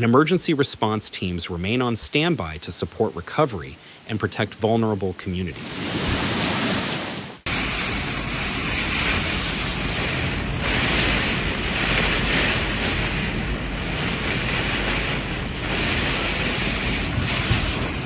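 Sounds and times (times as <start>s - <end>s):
floodwater rushing: 0.0s - 18.0s
wind buffeting microphone: 5.7s - 18.0s
heavy rain: 7.4s - 18.0s.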